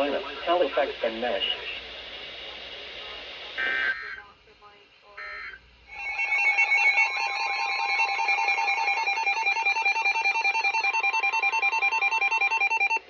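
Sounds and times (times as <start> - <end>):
two-tone electronic alert tone: 5.9 - 13.0.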